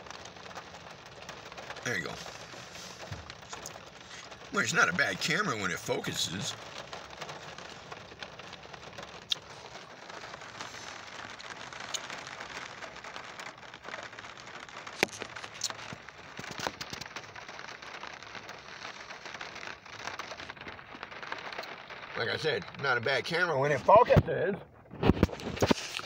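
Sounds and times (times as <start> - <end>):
heavy drops ticking: 0.0 - 25.2
heavy rain on a car: 0.0 - 26.0.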